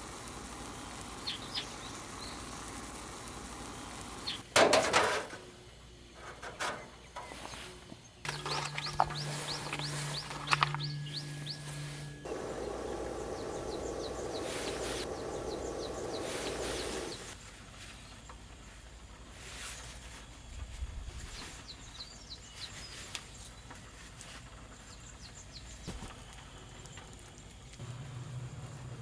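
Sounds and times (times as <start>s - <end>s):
small birds chirping: 0.7s - 2.8s, 3.6s - 4.5s, 6.8s - 17.4s, 20.8s - 27.8s
low hum: 8.3s - 17.4s
low rushing noise: 10.9s - 17.4s.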